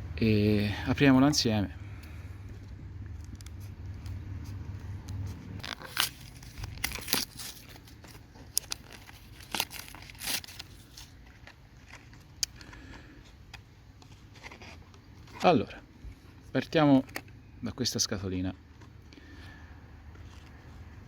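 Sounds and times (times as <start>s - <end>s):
packaging tearing and crinkling: 5.6s - 12.6s.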